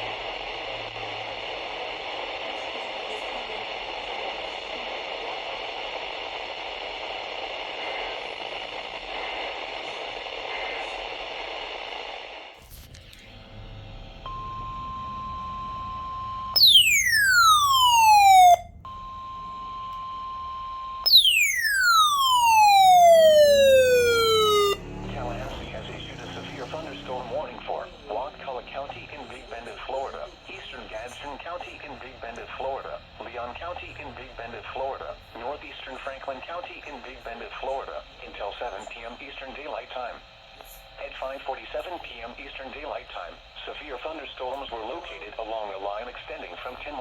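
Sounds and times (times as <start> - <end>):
radio static hiss: 0.0 - 13.4, 21.5 - 47.0
steady beep: 14.3 - 27.7.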